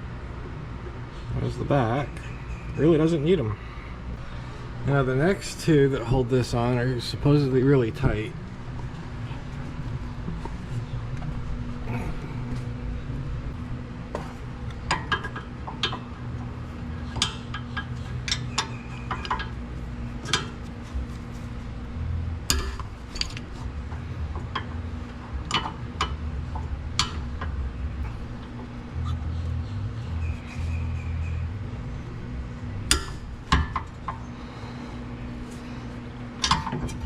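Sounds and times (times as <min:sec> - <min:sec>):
low steady hum: 0:00.0 - 0:37.0.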